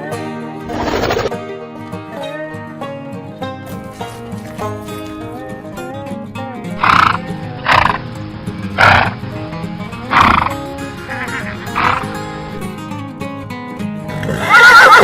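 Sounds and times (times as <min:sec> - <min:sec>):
plucked string music: 0:01.3 - 0:14.2
harsh horse calls: 0:06.8 - 0:09.2, 0:10.0 - 0:12.6, 0:14.3 - 0:15.0.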